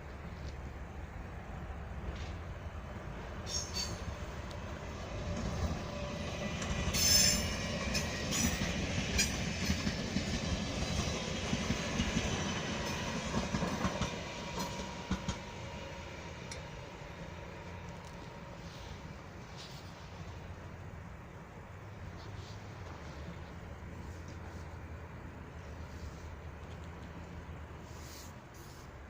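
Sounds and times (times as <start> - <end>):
train rumble: 0.0 - 29.0
wheels clicking over rail joints: 2.0 - 21.4
wheels squealing on rails: 3.2 - 29.0.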